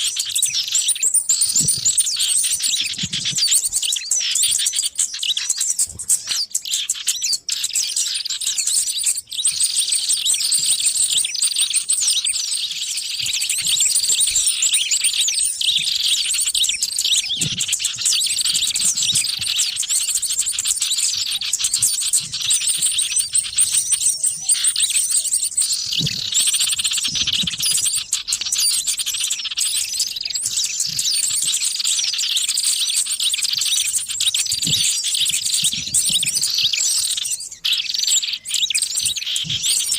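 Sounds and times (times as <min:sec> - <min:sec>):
small songbirds chirping and twittering: 0:00.0 - 0:39.9.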